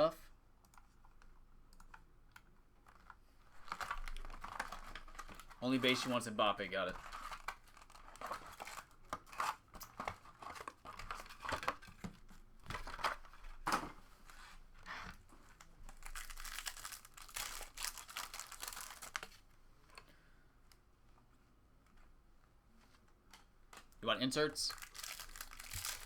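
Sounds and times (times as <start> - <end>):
wrapping torn and crinkled: 2.9 - 6.3, 6.9 - 11.5, 15.6 - 19.4, 24.7 - 26.0.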